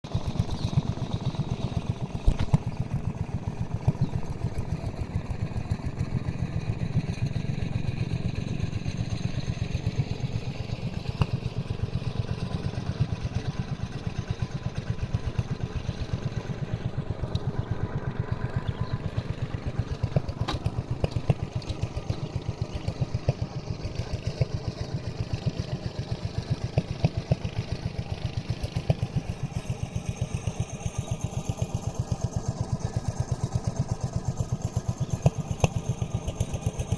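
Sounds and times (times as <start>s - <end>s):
small engine puttering: 0.1s - 36.9s.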